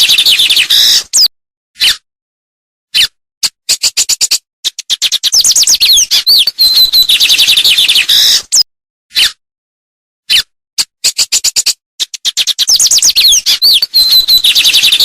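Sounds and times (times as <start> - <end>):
songbird singing: 5.0 - 8.6, 12.4 - 15.0.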